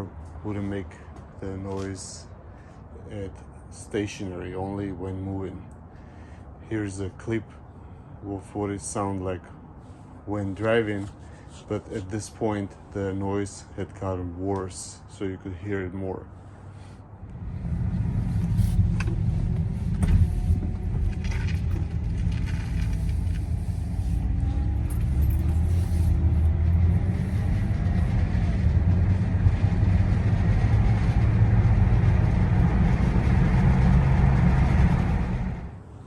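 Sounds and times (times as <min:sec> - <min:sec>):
car engine and road rumble: 0:16.2 - 0:36.0
engine bay rattle: 0:17.3 - 0:30.1.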